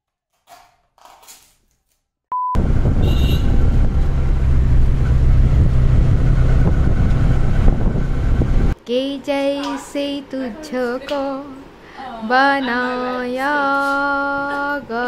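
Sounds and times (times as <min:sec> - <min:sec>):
short beep: 0:02.3 - 0:03.4
moving vehicle rumble and hiss: 0:02.6 - 0:08.8.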